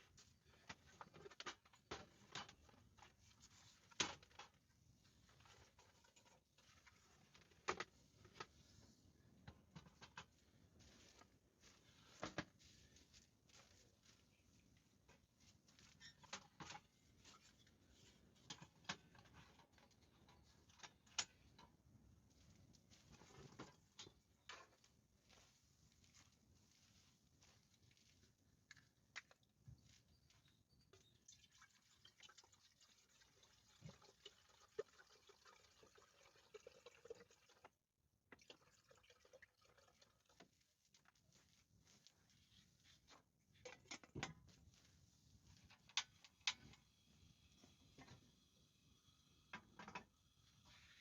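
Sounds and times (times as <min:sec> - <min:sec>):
faint irregular clicks and taps: 0:00.1 - 0:31.1, 0:40.4 - 0:46.9.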